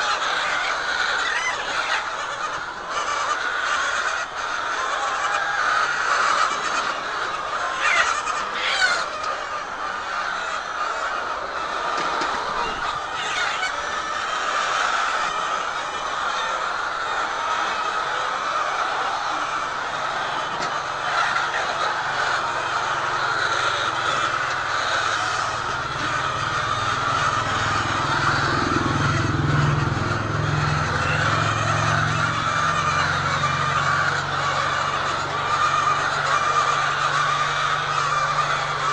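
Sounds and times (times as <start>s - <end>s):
hen squawks: 0.0s - 38.9s
hens clucking: 0.0s - 38.9s
mechanical drone: 26.9s - 33.0s.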